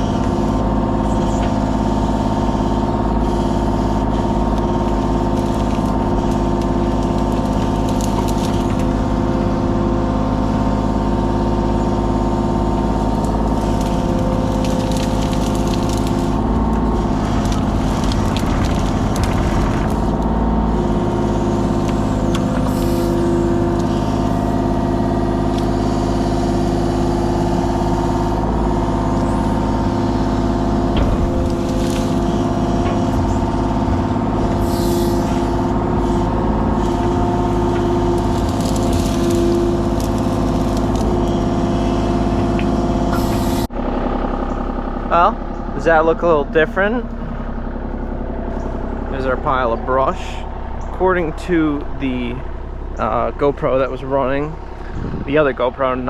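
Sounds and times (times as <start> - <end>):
diesel engine running: 0.0 - 56.0
crackles: 2.7 - 9.2, 12.5 - 24.8, 28.2 - 43.7.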